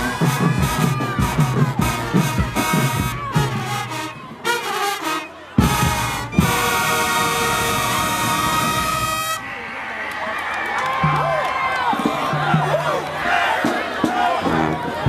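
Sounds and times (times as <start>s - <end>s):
marching band brass: 0.0s - 15.0s
drum strokes: 5.6s - 9.4s.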